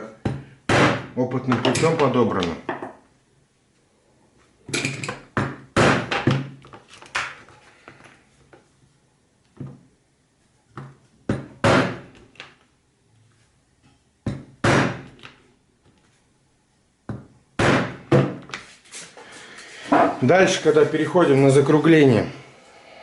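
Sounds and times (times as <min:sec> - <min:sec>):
hammer striking leather punch: 0:14.3 - 0:15.1, 0:17.6 - 0:18.3.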